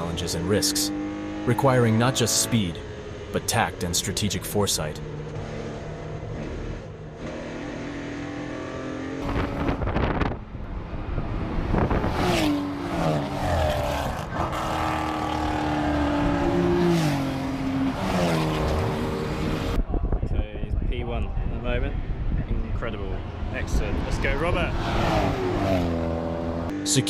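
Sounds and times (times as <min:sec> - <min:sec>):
car engine shifting gears: 0:04.7 - 0:19.8, 0:23.2 - 0:27.0.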